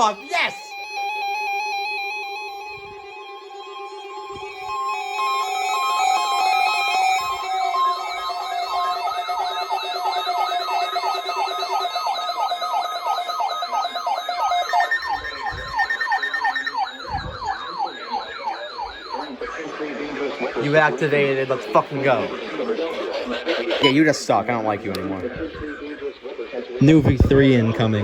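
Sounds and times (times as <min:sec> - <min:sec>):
warbling siren tone: 0:00.0 - 0:24.1
beeping alert tones: 0:04.2 - 0:19.3, 0:23.8 - 0:24.1.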